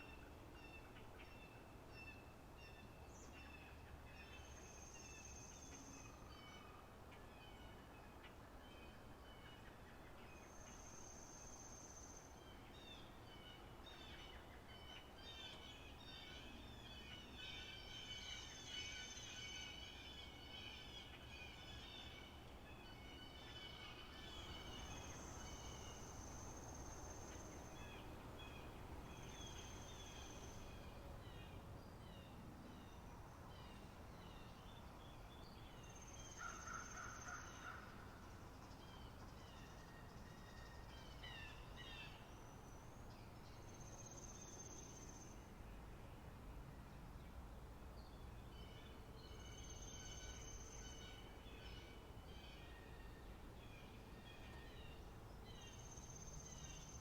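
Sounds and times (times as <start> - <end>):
small birds chirping: 23.1 - 37.5.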